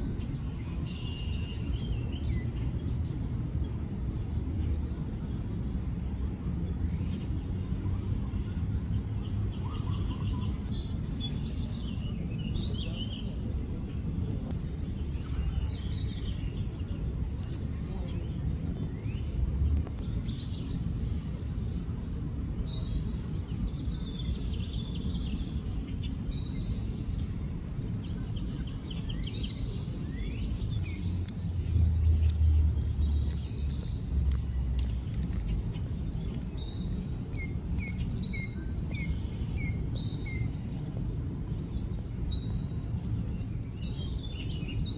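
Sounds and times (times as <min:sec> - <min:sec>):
steady low rumble: 0:00.0 - 0:44.9
small birds chirping: 0:23.6 - 0:44.9.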